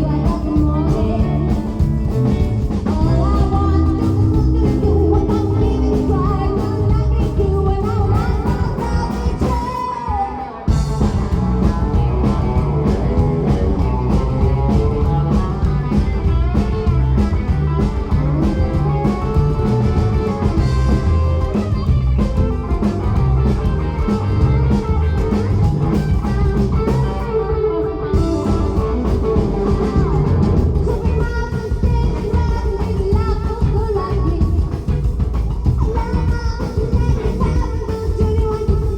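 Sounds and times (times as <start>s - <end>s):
person singing: 0.0s - 16.8s, 27.6s - 35.1s, 35.7s - 38.9s
rockabilly band playing: 0.0s - 38.9s.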